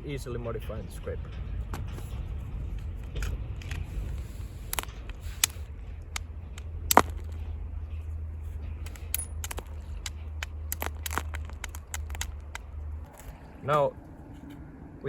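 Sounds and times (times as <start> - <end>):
steady low rumble: 0.0 - 15.0
flint knapping strikes: 3.6 - 7.4, 8.8 - 13.4.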